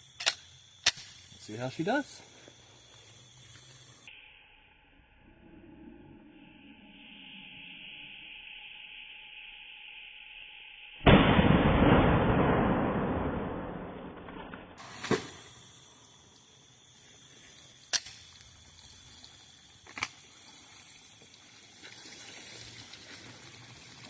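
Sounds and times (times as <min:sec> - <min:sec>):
high hiss: 0:00.0 - 0:11.6, 0:14.8 - 0:24.0
sharp clicks: 0:00.2 - 0:01.2.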